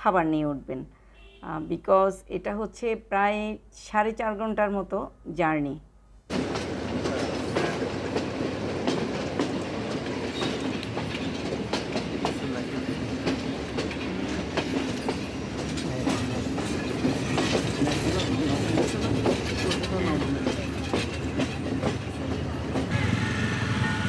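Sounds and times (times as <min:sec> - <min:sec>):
train carriage rumble: 0:06.3 - 0:24.0
train wheels clacking: 0:06.3 - 0:24.0.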